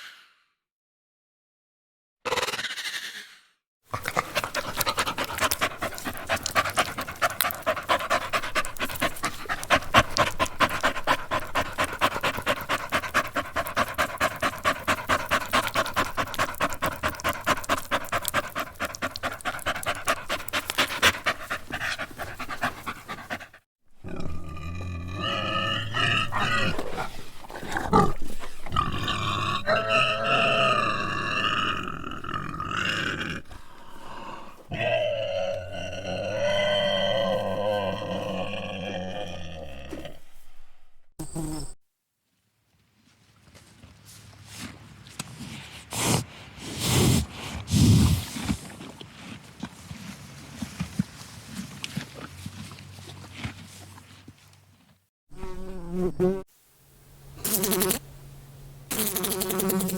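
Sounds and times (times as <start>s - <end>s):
animal panting: 3.9s - 23.7s, 25.5s - 30.6s, 33.4s - 35.0s
animal squealing: 28.8s - 32.1s.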